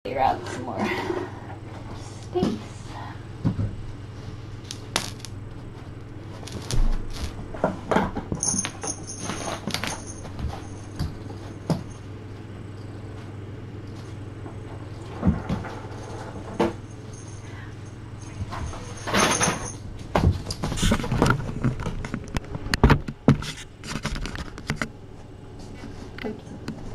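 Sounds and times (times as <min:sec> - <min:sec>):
steady low hum: 0:00.0 - 0:26.9.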